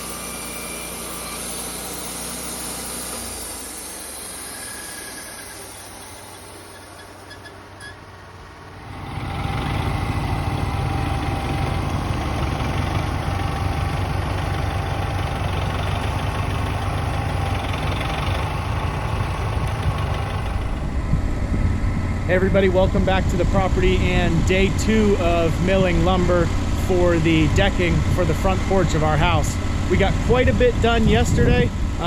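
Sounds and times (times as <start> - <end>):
sawmill engine idling: 0.0 - 32.0.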